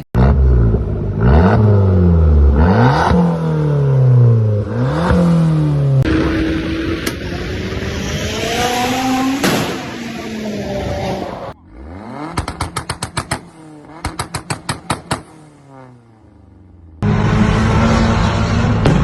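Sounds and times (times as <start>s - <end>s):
car engine revving: 0.2s - 19.0s
rapid sharp exhaust pops: 12.3s - 15.4s.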